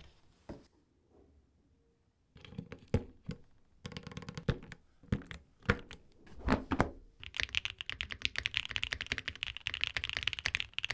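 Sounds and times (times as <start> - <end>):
mechanical keyboard typing: 7.2 - 10.9.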